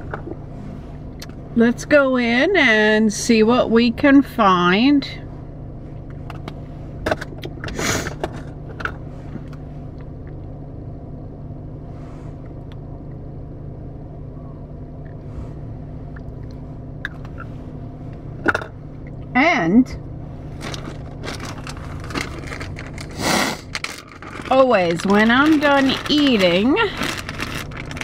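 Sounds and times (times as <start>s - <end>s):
car idling from inside: 0.0s - 28.0s
clicks and rustles: 20.6s - 28.0s.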